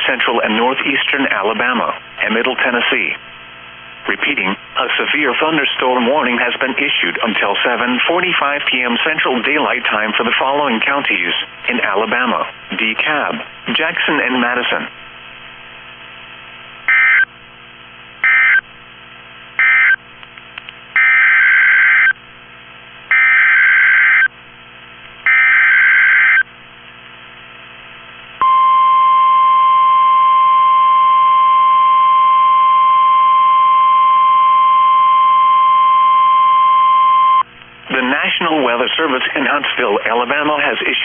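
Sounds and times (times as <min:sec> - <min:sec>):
steady warning alarm tone: 0:16.9 - 0:17.3, 0:18.2 - 0:18.6, 0:19.6 - 0:20.0, 0:21.0 - 0:22.2, 0:23.1 - 0:24.3, 0:25.2 - 0:26.5.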